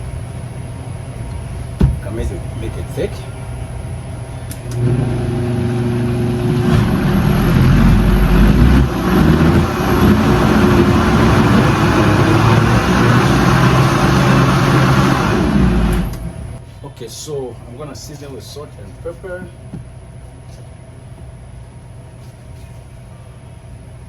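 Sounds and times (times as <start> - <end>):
blender motor running: 4.7 - 16.6.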